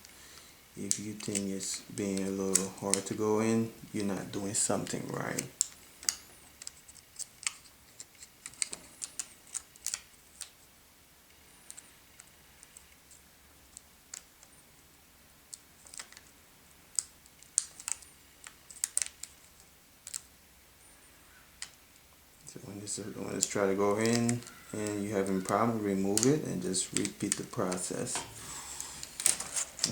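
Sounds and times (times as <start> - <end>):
small sharp clicks and taps: 5.4 - 10.6, 16.9 - 20.3.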